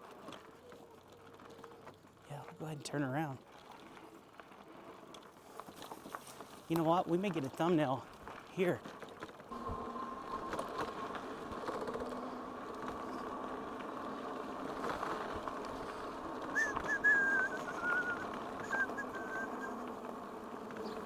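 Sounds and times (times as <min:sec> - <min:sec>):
bird whistling short notes: 0:16.5 - 0:19.8.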